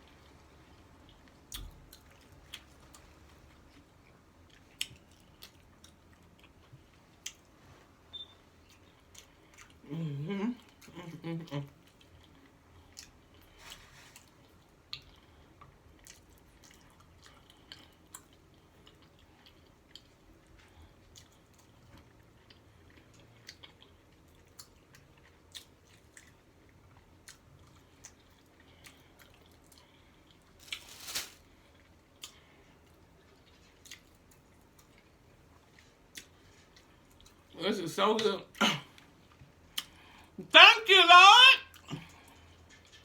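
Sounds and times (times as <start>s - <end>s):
person chewing: 0.0s - 7.6s, 8.6s - 37.6s, 39.0s - 40.3s
crunch: 30.6s - 32.4s.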